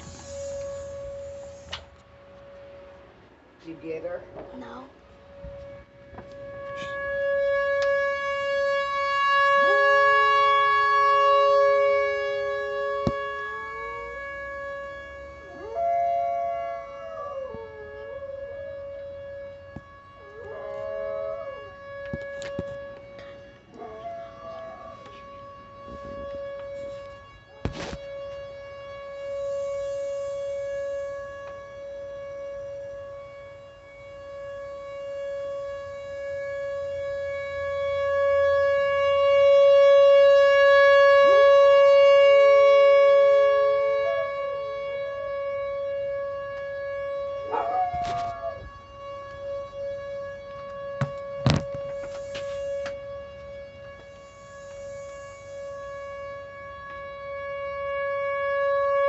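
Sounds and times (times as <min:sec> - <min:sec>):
tornado siren steady tone: 0:00.0 - 0:59.0
dog howling: 0:20.2 - 0:21.7, 0:23.8 - 0:25.2, 0:47.5 - 0:48.6
sharp knocks: 0:51.0 - 0:51.8.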